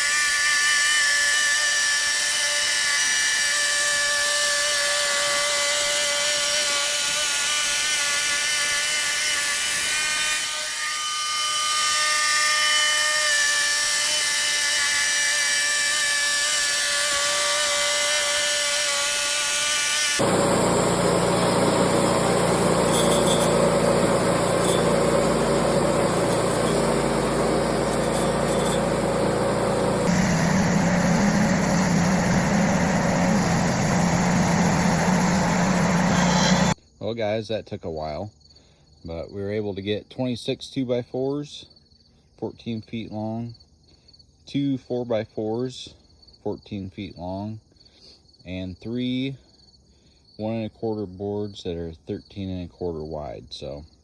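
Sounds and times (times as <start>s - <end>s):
band saw blade whining: 0.0s - 36.8s
engine running: 20.2s - 36.8s.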